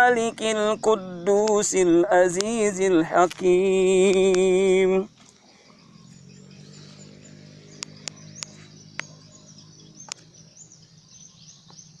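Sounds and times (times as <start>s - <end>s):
small birds chirping: 0.0s - 12.0s
sharp clicks: 1.3s - 5.4s, 7.7s - 9.2s, 10.0s - 10.3s.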